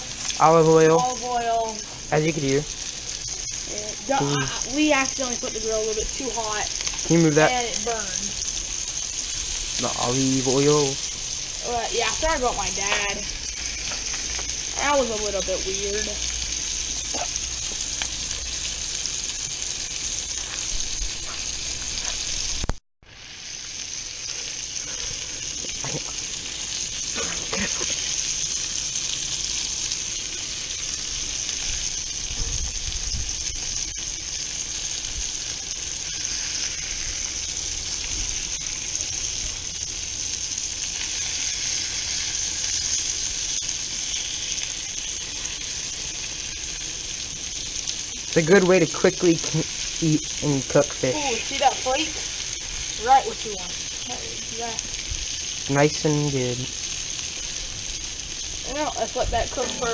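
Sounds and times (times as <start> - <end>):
fish frying in oil: 0.0 - 59.9.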